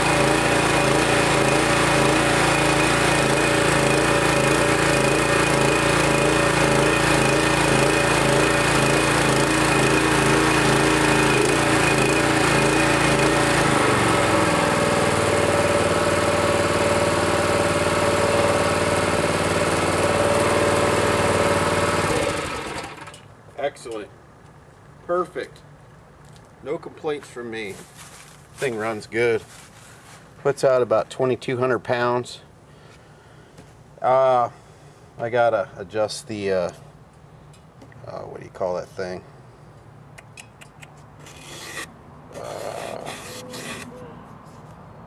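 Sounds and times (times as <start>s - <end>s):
gas pressure washer engine running: 0.0s - 23.2s.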